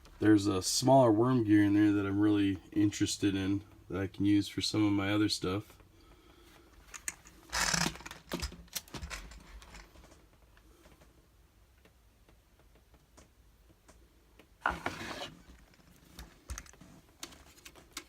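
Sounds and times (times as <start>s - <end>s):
plastic scrape: 14.6s - 16.1s.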